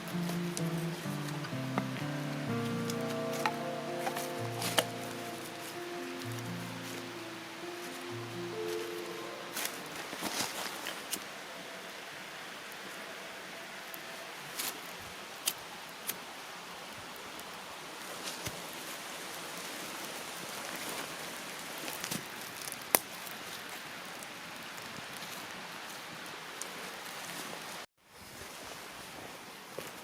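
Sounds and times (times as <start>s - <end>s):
campfire crackling: 0.0s - 12.9s, 16.8s - 27.7s.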